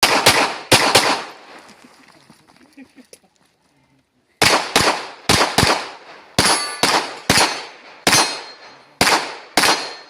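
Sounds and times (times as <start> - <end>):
rapid gunshots: 0.0 - 1.4, 4.4 - 10.0.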